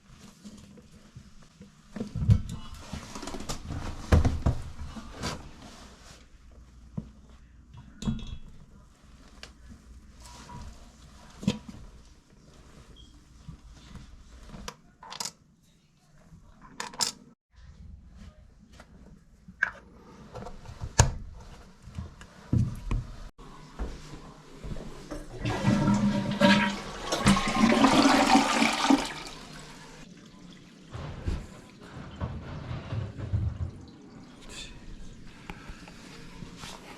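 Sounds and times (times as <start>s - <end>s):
toilet flushing: 24.6s - 35.3s.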